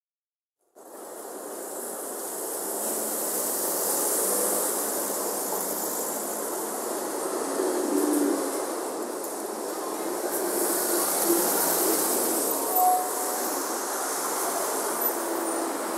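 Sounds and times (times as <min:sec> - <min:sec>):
traffic noise: 0:00.6 - 0:15.9
crowd noise: 0:07.0 - 0:15.9.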